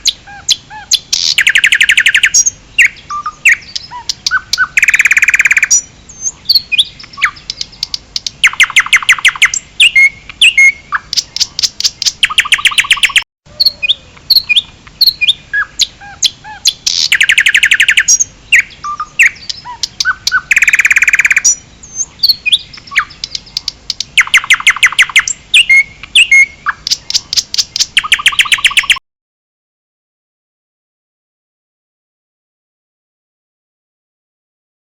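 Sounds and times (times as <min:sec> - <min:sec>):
bird chirps and whistles: 0:00.0 - 0:29.0
bird singing trills: 0:00.0 - 0:29.0.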